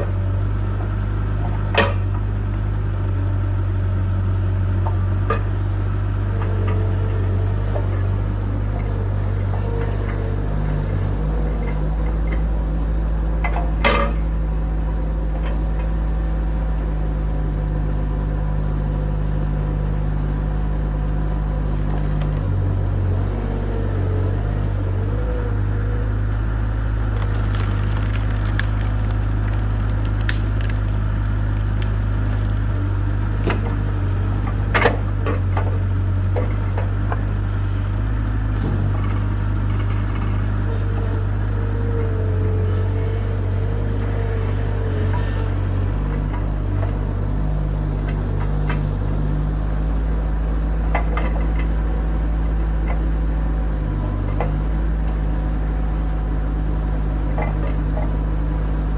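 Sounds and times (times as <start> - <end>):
diesel engine running: 0.0 - 58.9
timber splitting cracks: 21.8 - 22.5, 27.1 - 33.6
wood splitting clicks: 27.2 - 32.8.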